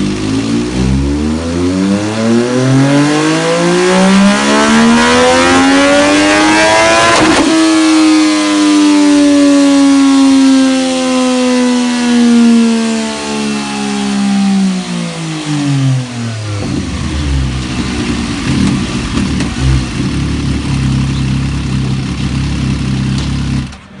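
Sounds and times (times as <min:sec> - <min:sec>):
motorcycle engine revving: 0:00.0 - 0:23.9
exhaust crack: 0:07.0 - 0:07.9, 0:15.1 - 0:24.0.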